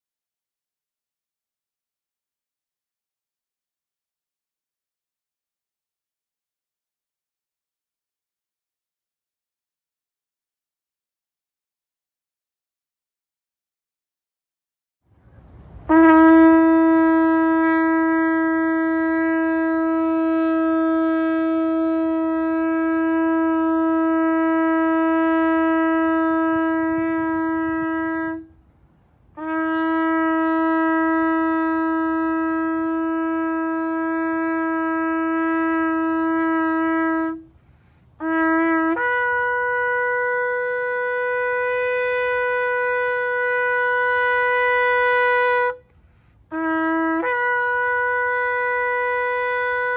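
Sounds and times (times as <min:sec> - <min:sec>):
shofar blasts: 0:15.8 - 0:28.6, 0:29.3 - 0:49.9.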